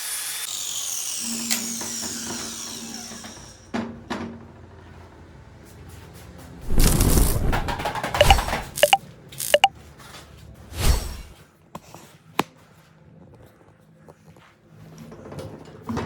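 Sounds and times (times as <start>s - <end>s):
objects knocking and scraping: 6.7s - 9.7s.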